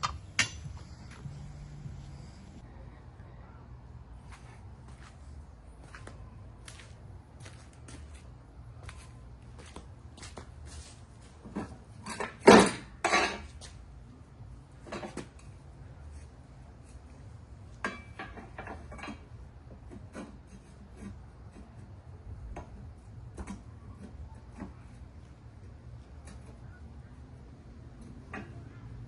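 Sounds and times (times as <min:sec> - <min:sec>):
metal tools clinking: 0:00.0 - 0:00.9.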